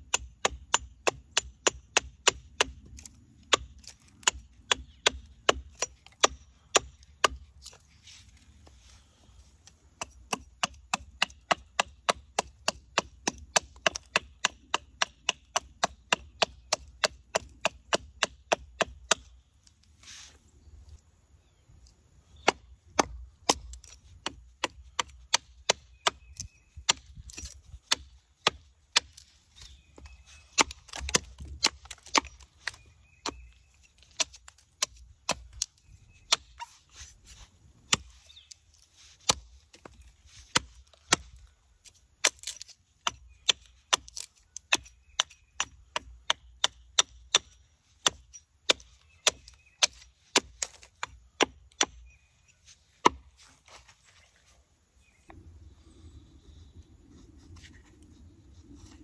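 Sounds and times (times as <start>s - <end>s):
wood chopping strikes: 30.0s - 35.7s, 53.0s - 53.3s.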